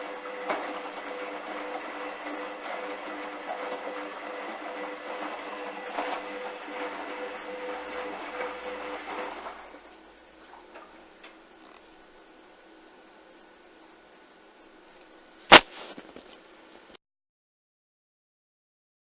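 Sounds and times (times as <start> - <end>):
washing machine running: 0.0 - 11.4.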